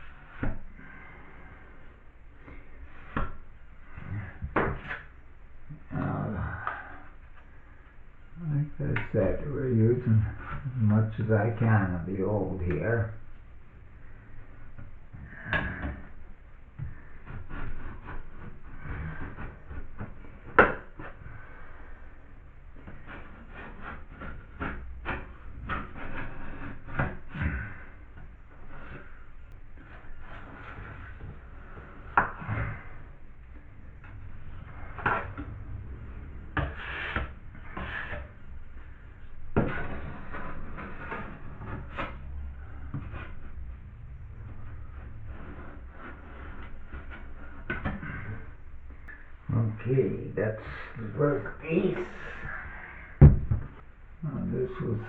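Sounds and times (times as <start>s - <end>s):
scrapes and taps on drywall: 2.4s - 5.1s, 14.6s - 49.2s.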